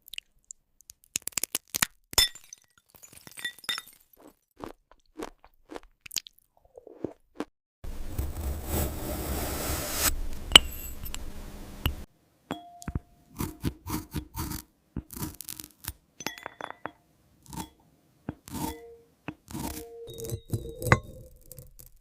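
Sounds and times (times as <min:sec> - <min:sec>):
grainy scraping and crunching: 0:06.8 - 0:11.4, 0:14.4 - 0:16.0
small glassy taps and clinks: 0:12.5 - 0:13.1, 0:16.2 - 0:17.0, 0:20.0 - 0:21.6.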